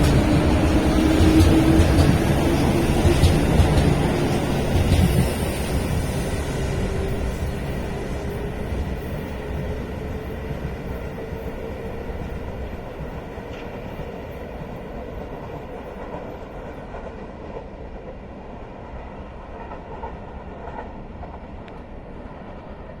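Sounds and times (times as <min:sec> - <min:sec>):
electric train rumbling on rails: 0:00.0 - 0:23.0.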